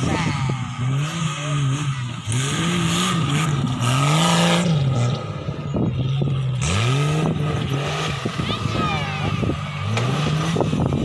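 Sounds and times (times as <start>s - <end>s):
off-road vehicle engine revving: 0.0s - 11.0s.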